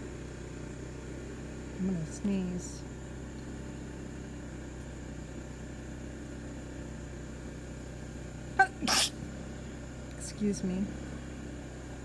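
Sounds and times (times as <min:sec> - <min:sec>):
low background hum: 0:00.0 - 0:12.0
person sneezing: 0:08.6 - 0:09.2.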